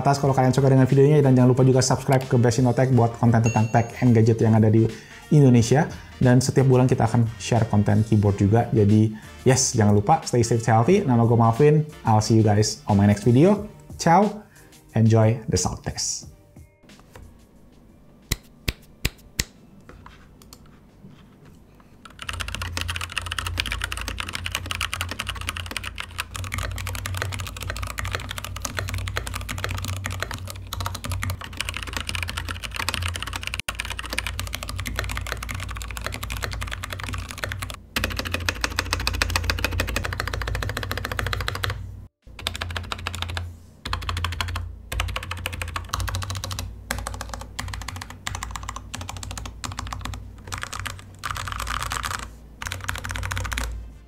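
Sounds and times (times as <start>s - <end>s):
fast continuous typing: 22.0s - 53.8s.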